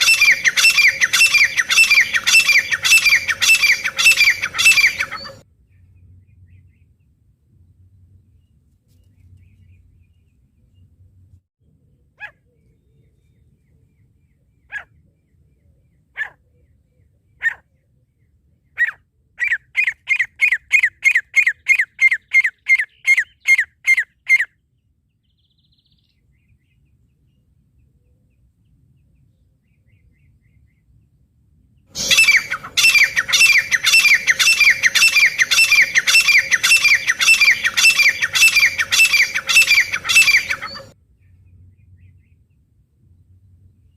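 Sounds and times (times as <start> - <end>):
bird calling sharp notes: 0.0 - 5.4, 32.0 - 41.0.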